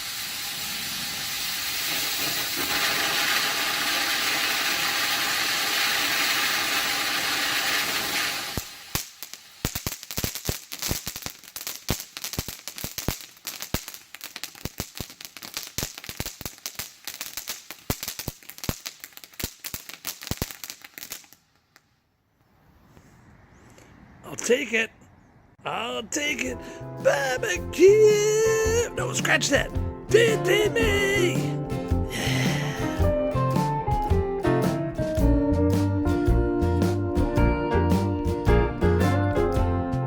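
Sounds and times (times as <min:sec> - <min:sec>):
fountain firework hissing: 0:00.0 - 0:11.0, 0:27.1 - 0:33.7
crackling pops: 0:01.0 - 0:22.0, 0:27.0 - 0:37.3.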